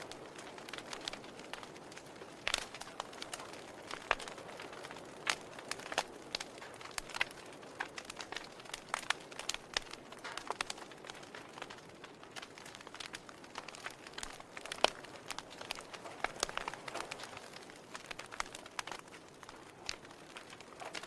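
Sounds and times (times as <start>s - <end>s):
fire soft hiss: 0.0s - 21.0s
wood fire crackling and popping: 0.0s - 21.0s.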